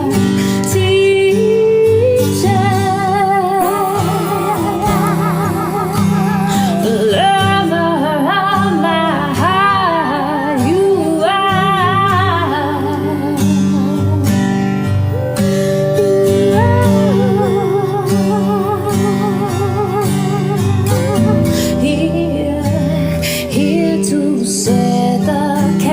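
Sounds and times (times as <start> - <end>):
acoustic guitar: 0.0 - 25.9
person singing with vibrato: 0.0 - 25.9.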